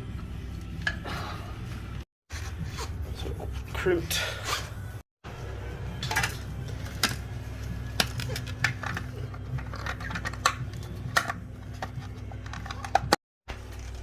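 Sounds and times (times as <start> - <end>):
tools and parts clicking: 8.0 - 13.2.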